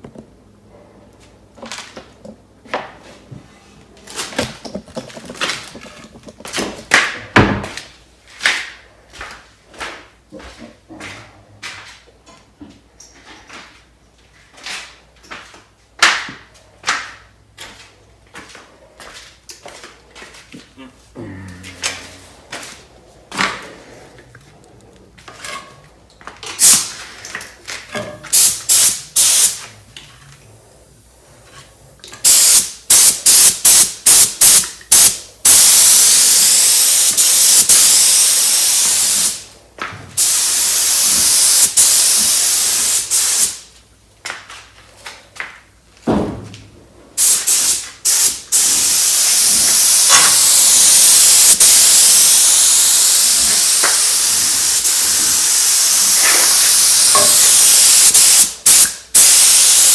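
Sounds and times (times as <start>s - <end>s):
paint spray gun hissing: 26.6s - 26.9s, 28.3s - 29.6s, 32.2s - 39.4s, 40.2s - 43.6s, 47.2s - 59.9s.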